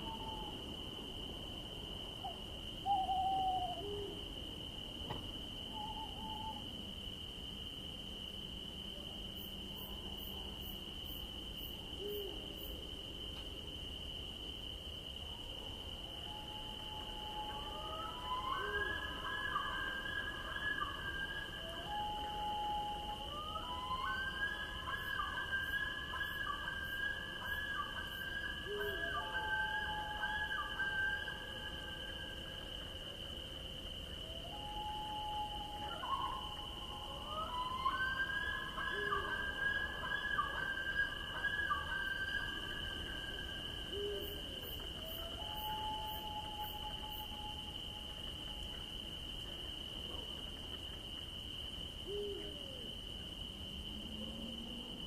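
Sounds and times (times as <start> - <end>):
owl hooting: 0.0 - 0.6, 2.8 - 4.2, 5.7 - 6.7, 16.3 - 32.0, 34.3 - 47.8, 52.0 - 52.9
crickets chirping drone: 0.0 - 55.0
high insect-like whine: 0.0 - 55.0.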